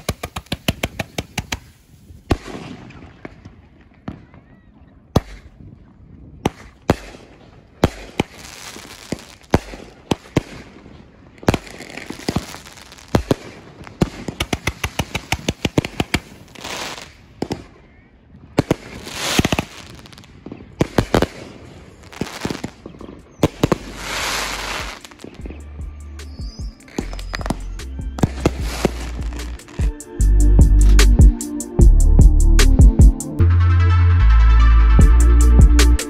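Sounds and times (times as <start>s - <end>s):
crackling firework bursts: 0.0s - 3.5s, 6.5s - 17.7s, 18.6s - 25.5s, 26.8s - 29.9s
fireworks bangs: 0.0s - 5.6s, 6.4s - 17.8s, 18.5s - 25.6s, 26.4s - 29.9s.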